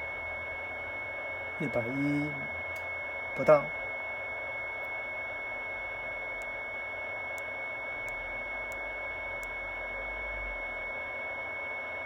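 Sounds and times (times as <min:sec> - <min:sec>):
thin steady whistle: 0:00.0 - 0:12.0
radio hiss: 0:01.6 - 0:02.6, 0:03.4 - 0:03.7.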